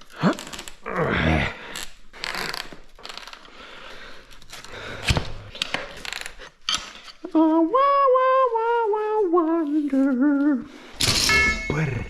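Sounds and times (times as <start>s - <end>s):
rubber tire scraping and creaking: 0.0s - 6.6s
metal levers clanking on rim: 11.0s - 12.0s.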